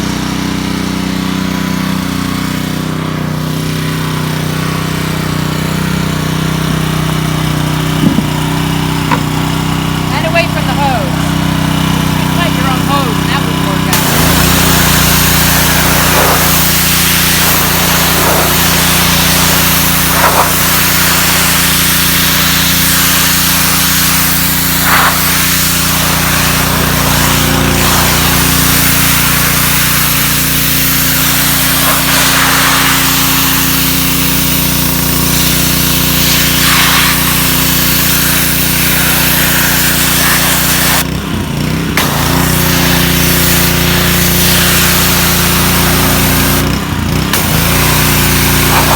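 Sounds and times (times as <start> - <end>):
engine running under load: 0.0 - 48.9
high-pressure water spray hissing: 3.6 - 41.1, 42.0 - 48.9.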